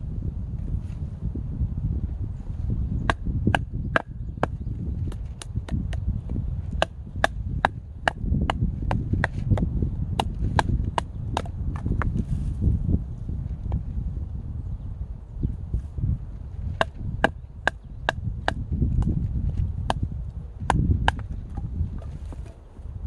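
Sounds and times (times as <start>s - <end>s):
blade striking wood: 3.1s - 6.0s, 6.7s - 12.2s, 16.7s - 19.2s, 20.7s - 22.6s.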